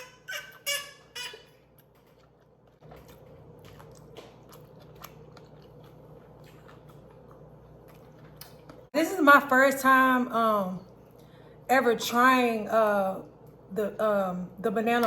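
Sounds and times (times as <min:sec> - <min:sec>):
close-miked chewing: 0:01.6 - 0:08.9.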